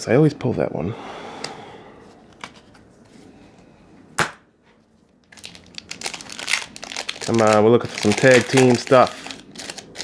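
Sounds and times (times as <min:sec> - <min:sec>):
foil wrapper crinkling: 0:05.2 - 0:10.0.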